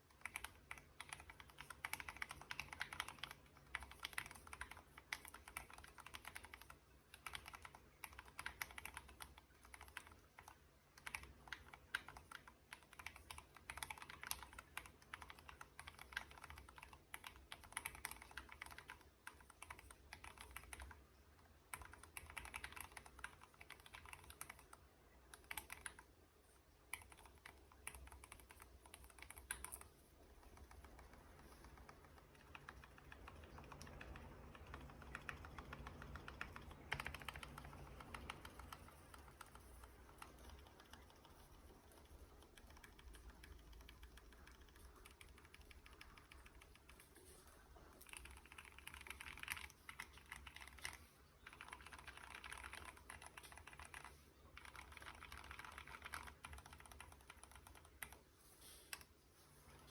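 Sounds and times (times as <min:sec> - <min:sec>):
mechanical keyboard typing: 0:00.0 - 0:58.3.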